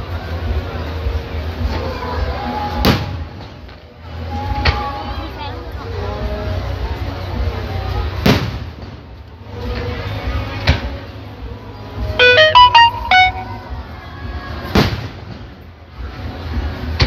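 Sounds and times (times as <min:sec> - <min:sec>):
high electronic notes tune: 0:12.2 - 0:13.7.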